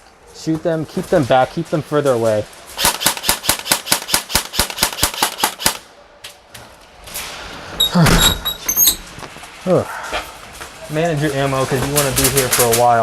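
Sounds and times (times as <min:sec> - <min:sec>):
airsoft gun rapid fire: 0:02.8 - 0:05.8.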